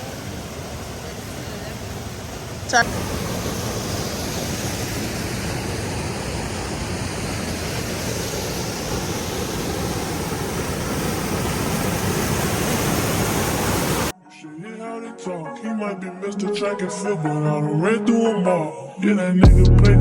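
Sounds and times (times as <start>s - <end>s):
river water rushing over rocks: 0.0s - 14.1s.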